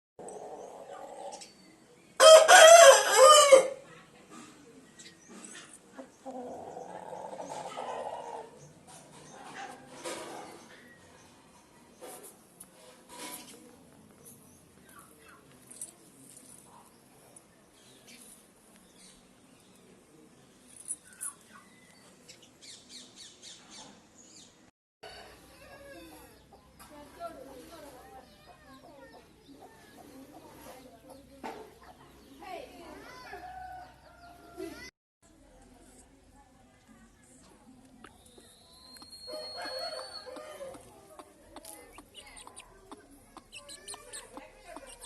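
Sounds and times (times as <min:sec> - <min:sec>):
rooster crowing: 0:02.2 - 0:03.8, 0:39.3 - 0:40.7
birds chirping: 0:37.3 - 0:45.0.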